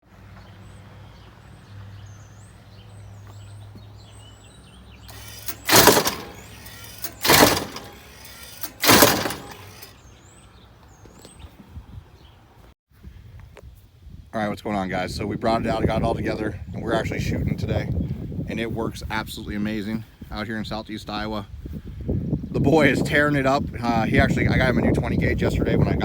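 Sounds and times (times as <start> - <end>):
birds chirping: 0.3 - 12.4.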